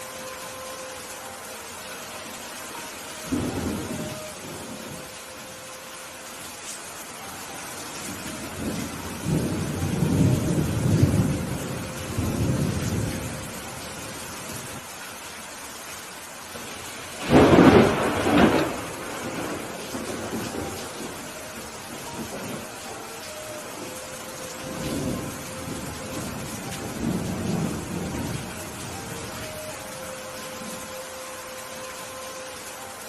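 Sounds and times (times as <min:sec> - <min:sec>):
steady rain: 0:00.0 - 0:33.0
thunder rumbling: 0:03.3 - 0:05.1, 0:08.1 - 0:14.8, 0:16.6 - 0:29.9.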